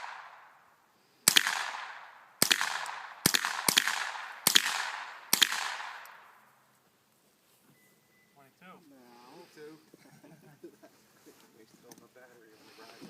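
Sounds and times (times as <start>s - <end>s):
rifle shots echoing: 0.0s - 6.4s.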